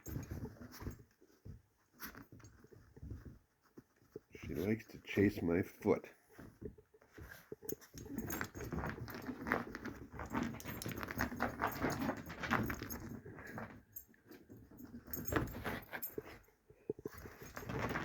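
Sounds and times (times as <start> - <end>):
dog claws clicking on floor: 7.2 - 16.4.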